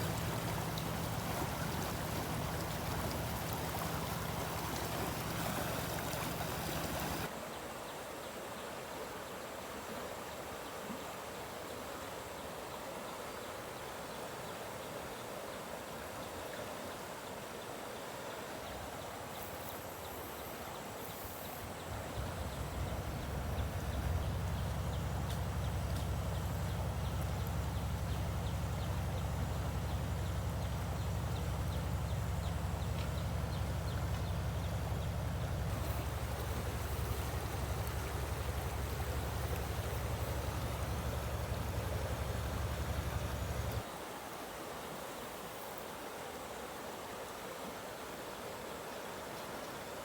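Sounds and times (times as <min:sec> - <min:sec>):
water hissing: 0:00.0 - 0:07.3, 0:33.3 - 0:43.8.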